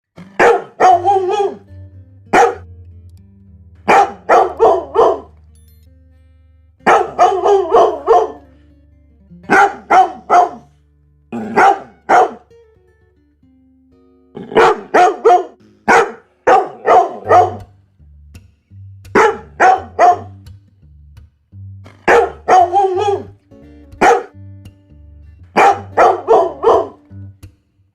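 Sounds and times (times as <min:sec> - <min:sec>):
dog barking: 0:00.2 - 0:01.6, 0:02.3 - 0:02.6, 0:03.9 - 0:05.3, 0:06.8 - 0:08.4, 0:09.5 - 0:10.7, 0:11.4 - 0:12.5, 0:14.4 - 0:17.7, 0:19.2 - 0:20.4, 0:22.1 - 0:23.3, 0:24.0 - 0:24.3, 0:25.6 - 0:27.0.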